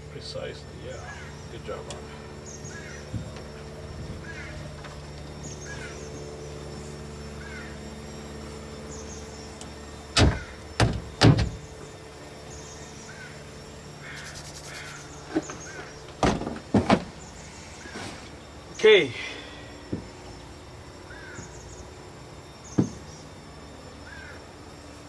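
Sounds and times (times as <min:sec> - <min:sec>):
steady low hum: 0:00.0 - 0:25.0
sharp knocks and thuds: 0:10.2 - 0:11.6, 0:16.2 - 0:17.2, 0:22.7 - 0:23.1.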